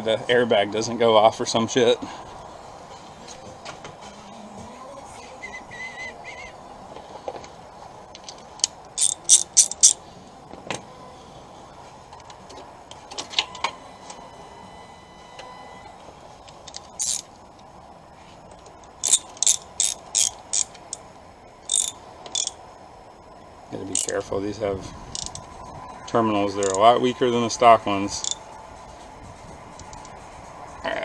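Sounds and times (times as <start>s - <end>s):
ratchet wrench clicking: 8.2s - 10.0s, 16.7s - 17.3s, 18.9s - 21.0s, 21.7s - 22.6s, 23.9s - 24.3s, 25.1s - 25.4s, 26.6s - 26.8s, 28.2s - 28.4s.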